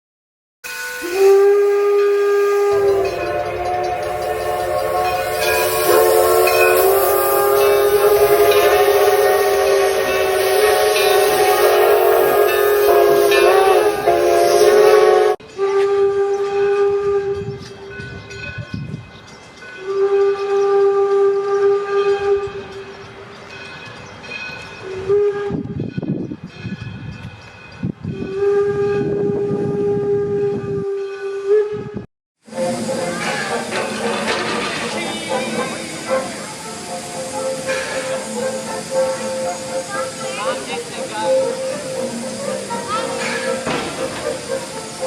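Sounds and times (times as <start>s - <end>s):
steam whistle chord: 0.6s - 18.0s, 19.8s - 23.0s, 28.1s - 45.0s
steam hiss: 0.7s - 16.2s, 32.4s - 45.0s.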